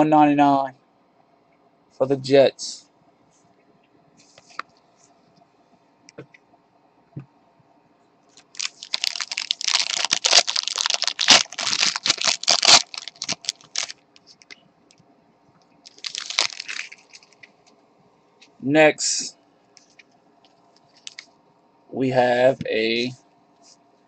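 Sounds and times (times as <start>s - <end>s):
plastic packaging crinkling: 8.4s - 14.6s, 15.8s - 17.5s, 20.8s - 21.2s.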